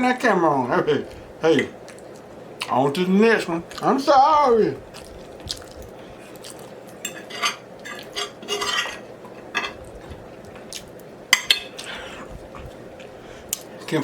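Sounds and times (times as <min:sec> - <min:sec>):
cutlery and dishes clinking: 0:07.0 - 0:09.8, 0:11.3 - 0:11.8.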